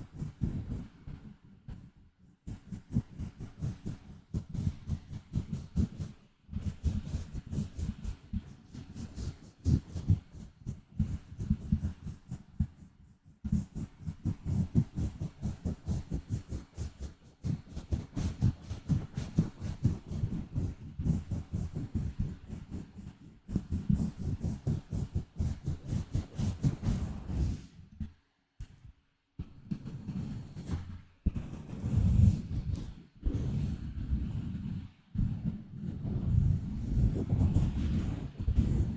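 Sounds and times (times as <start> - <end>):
scratching on a microphone: 0.0 - 38.9.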